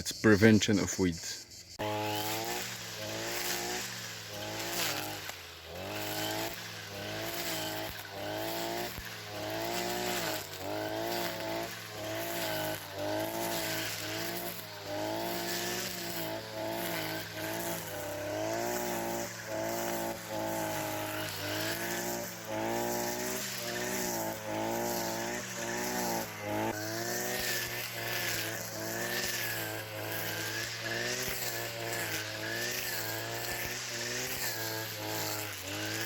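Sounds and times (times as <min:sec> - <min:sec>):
weed whacker engine revving: 0:00.0 - 0:36.0.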